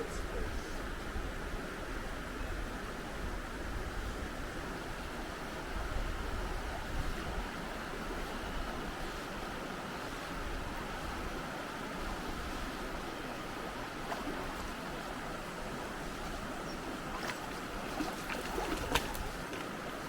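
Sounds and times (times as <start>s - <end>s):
river running over stones: 4.7s - 20.0s.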